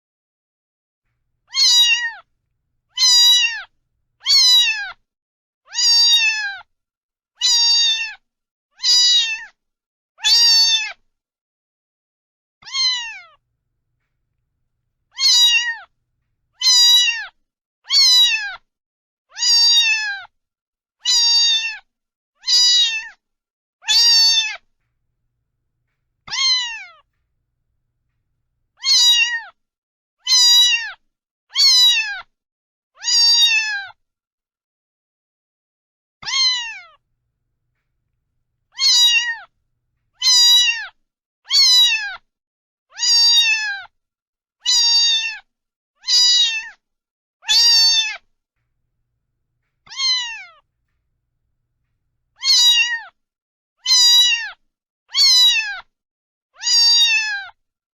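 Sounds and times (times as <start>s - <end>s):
cat meowing: 1.5s - 2.2s, 2.9s - 4.9s, 5.7s - 6.6s, 7.4s - 8.1s, 8.8s - 9.4s, 12.6s - 13.4s, 15.1s - 15.9s, 16.6s - 17.3s, 17.9s - 18.6s, 19.4s - 20.0s, 22.5s - 23.0s, 26.3s - 27.0s, 28.8s - 29.5s, 30.3s - 31.0s, 31.6s - 32.2s, 33.0s - 33.8s, 36.2s - 37.0s, 38.7s - 39.5s, 40.2s - 40.9s, 41.5s - 42.2s, 43.0s - 43.7s, 46.1s - 46.7s, 49.9s - 50.6s, 52.4s - 53.0s, 53.8s - 54.5s, 56.6s - 57.4s.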